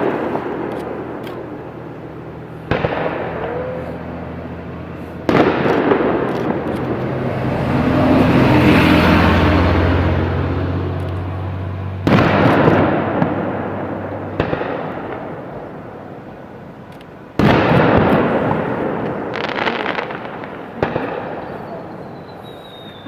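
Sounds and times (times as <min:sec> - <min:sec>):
fireworks bursting: 0:00.0 - 0:23.0
fireworks crackling: 0:00.0 - 0:23.0
high falling whistle: 0:21.4 - 0:23.0.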